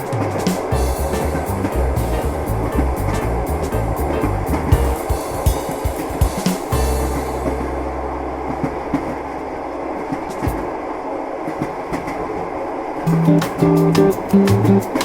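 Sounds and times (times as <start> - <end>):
jazz bass notes: 0.0 - 9.9, 13.1 - 15.0
train carriage rumble: 0.0 - 15.0
held low note: 6.8 - 10.2.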